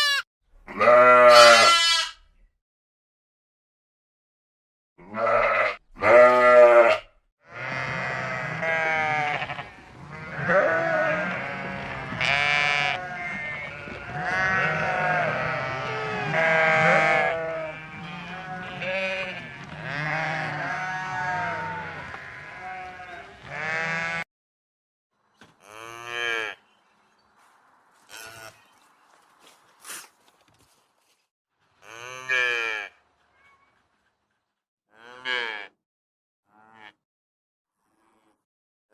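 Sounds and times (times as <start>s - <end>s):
flock bleating: 0.0s - 2.2s
single loud bleats: 0.0s - 2.2s, 5.0s - 24.2s, 34.9s - 35.8s.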